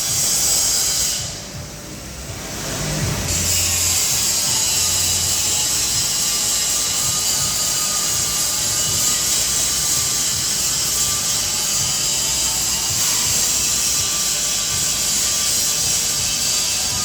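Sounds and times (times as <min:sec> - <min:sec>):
loud high-pitched hiss: 0:00.0 - 0:17.0.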